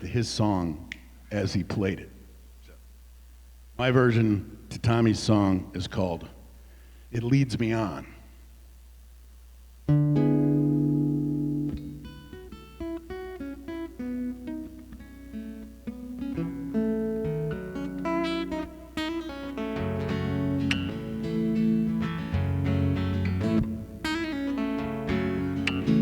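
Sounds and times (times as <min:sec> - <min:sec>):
acoustic guitar fingerpicking: 0:09.9 - 0:26.0.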